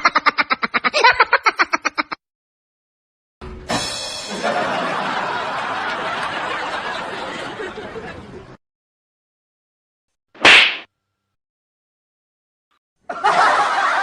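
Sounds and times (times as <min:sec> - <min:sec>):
loud smack: 0:10.4 - 0:10.9.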